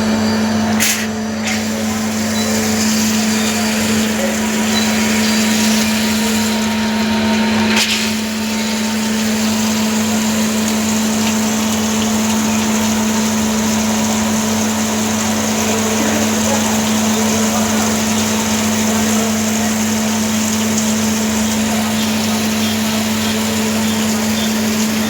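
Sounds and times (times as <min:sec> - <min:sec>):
lathe machine hum: 0:00.0 - 0:25.0
short sharp click: 0:00.8 - 0:01.6.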